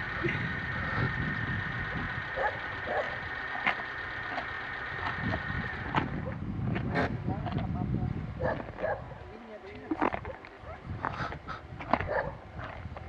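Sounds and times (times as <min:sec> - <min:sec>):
dogs barking: 0:01.8 - 0:04.6, 0:08.4 - 0:09.2, 0:11.9 - 0:12.4.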